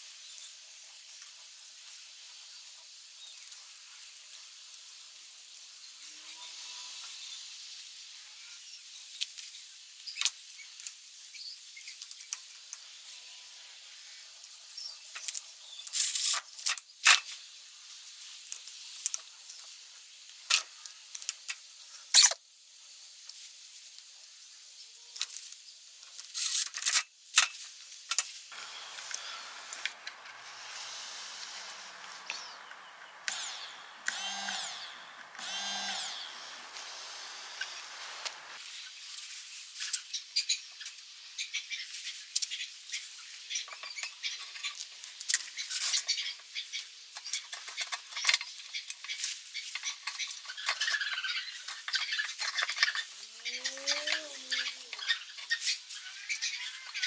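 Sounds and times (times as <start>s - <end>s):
metal tools clinking: 16.0s - 16.4s, 26.4s - 26.9s
hiss: 28.5s - 38.6s
small motor whirring: 28.5s - 38.6s.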